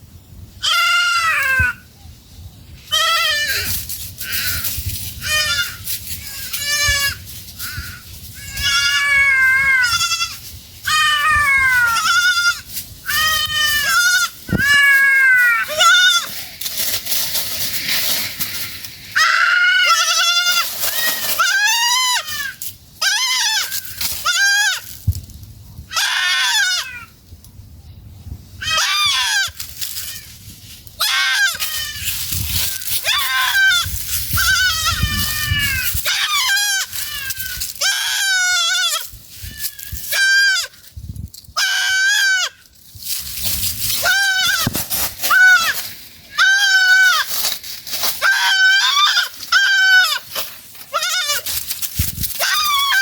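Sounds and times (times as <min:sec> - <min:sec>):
goats bleating: 0:48.2 - 0:51.6.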